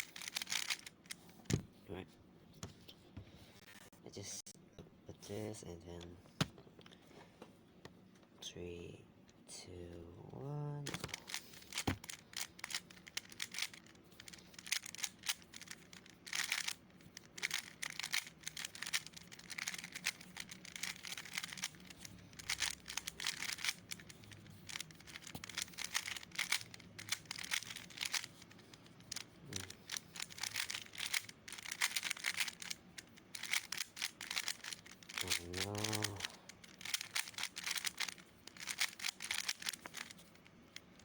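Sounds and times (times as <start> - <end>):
puzzle cube clicking and clacking: 0.0 - 1.6, 10.8 - 41.0.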